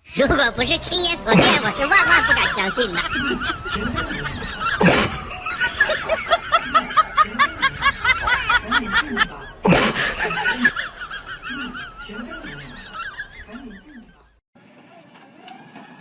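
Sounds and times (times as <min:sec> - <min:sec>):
person laughing hard: 0:01.3 - 0:13.9.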